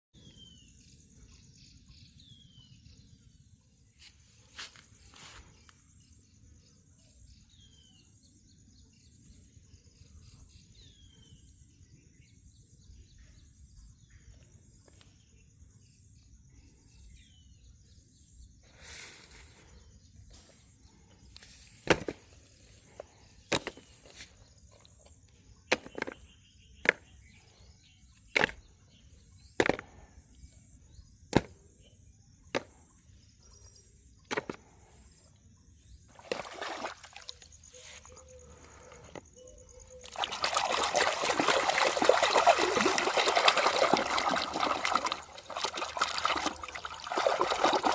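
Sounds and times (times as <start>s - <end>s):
faint chirps: 22.4s - 47.9s.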